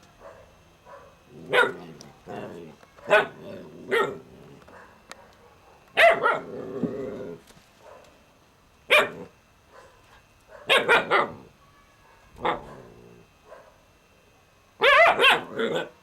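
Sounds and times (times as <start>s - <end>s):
puppy barking: 0.2s - 2.0s, 3.0s - 6.5s, 7.8s - 8.1s, 8.9s - 13.8s, 14.8s - 16.0s.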